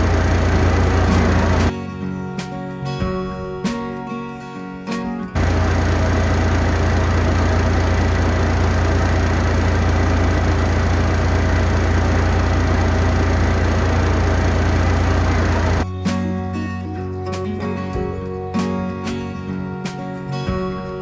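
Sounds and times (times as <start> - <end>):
heavy vehicle engine idling: 0.0 - 1.7, 5.4 - 15.8.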